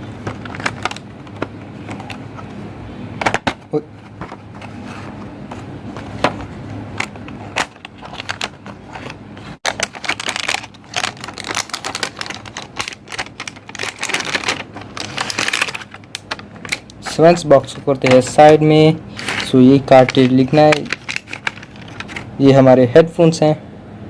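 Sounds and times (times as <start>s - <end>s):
packaging clicks and crackles: 0.0s - 2.2s, 7.0s - 17.0s, 19.1s - 22.3s.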